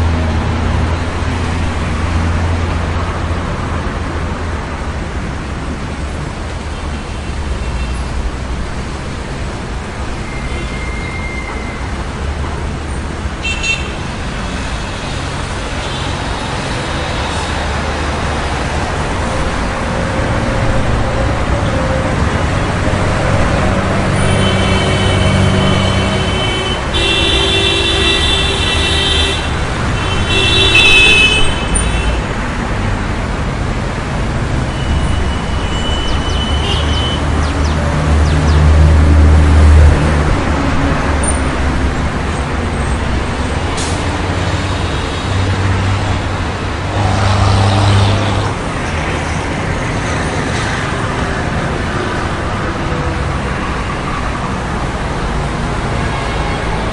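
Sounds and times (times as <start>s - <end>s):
street traffic: 0.0s - 56.9s
horns honking: 24.1s - 32.3s, 34.6s - 38.6s, 46.8s - 48.7s
heavy vehicle passing: 35.3s - 56.9s.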